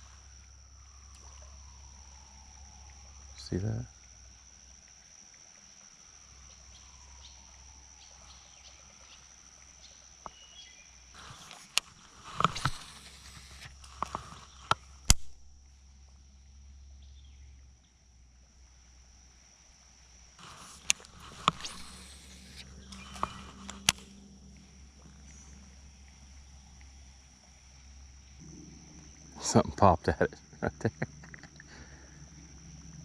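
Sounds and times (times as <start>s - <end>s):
high-pitched insect drone: 0.0s - 33.0s
rustling: 11.2s - 15.5s, 20.4s - 25.8s
sharp clicks: 11.2s - 15.5s, 20.4s - 24.2s.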